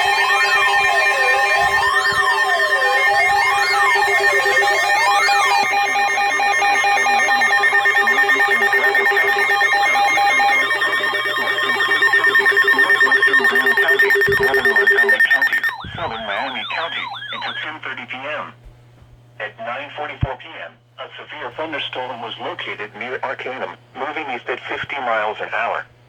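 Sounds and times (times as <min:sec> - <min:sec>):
rapidly pulsed alert tones: 0:00.0 - 0:17.7
siren tone sweeping up and down: 0:00.0 - 0:17.7.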